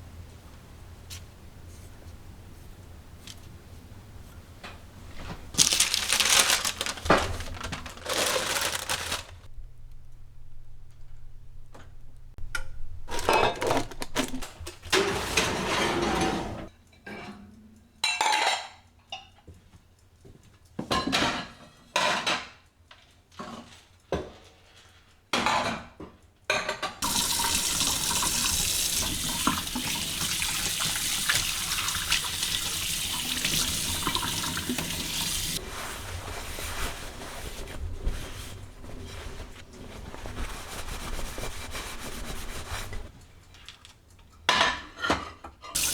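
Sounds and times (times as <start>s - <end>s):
dishes and cutlery clattering: 14.9s - 19.3s, 20.9s - 22.6s, 44.4s - 45.9s
tap running: 27.0s - 35.6s.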